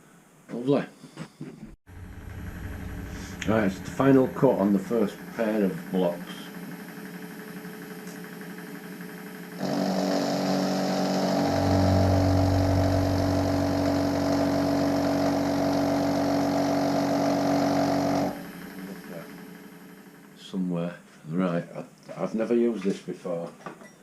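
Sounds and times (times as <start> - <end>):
milling machine humming: 1.9 - 20.0.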